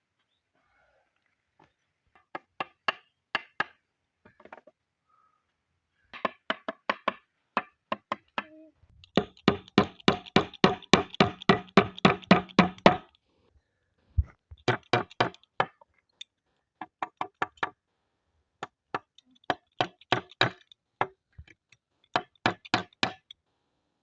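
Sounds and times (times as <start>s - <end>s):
hammer knocking on wood: 6.2s - 8.5s, 9.2s - 13.0s, 22.2s - 23.2s.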